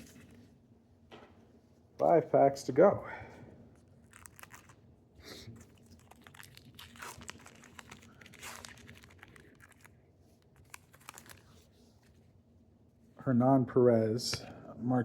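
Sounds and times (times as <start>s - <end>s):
wrapper crinkling and tearing: 4.0s - 4.8s, 5.6s - 11.7s.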